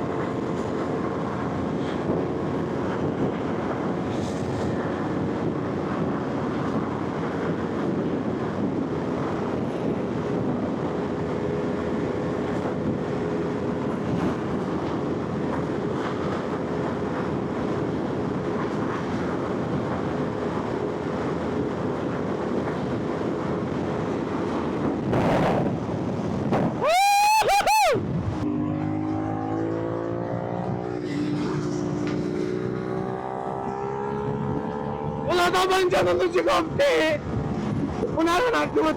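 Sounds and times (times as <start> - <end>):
wind rush: 0.0 - 28.6, 30.3 - 38.9
rising and falling tone: 26.7 - 30.8.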